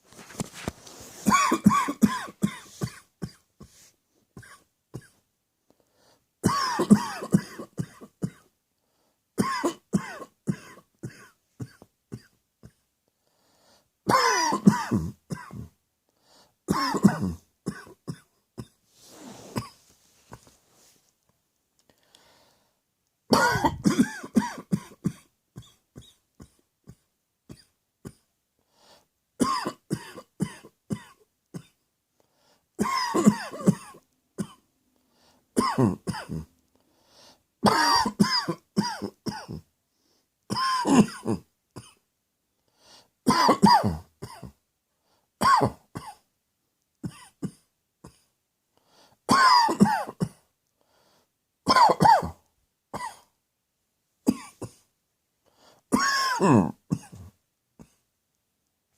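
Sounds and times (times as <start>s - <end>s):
muffled coughing: 1.2s - 3.8s, 6.5s - 8.5s, 14.1s - 15.7s, 16.7s - 18.8s, 23.3s - 28.3s, 32.8s - 34.6s, 35.6s - 36.5s, 37.6s - 39.7s, 40.5s - 42.0s, 43.3s - 44.6s, 49.3s - 50.5s, 51.7s - 52.4s, 56.0s - 58.0s.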